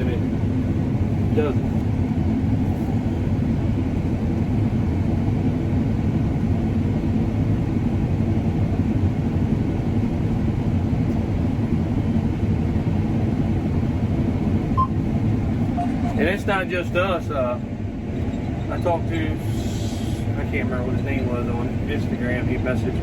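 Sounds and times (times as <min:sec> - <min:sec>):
combine harvester engine drone: 0:00.0 - 0:23.0.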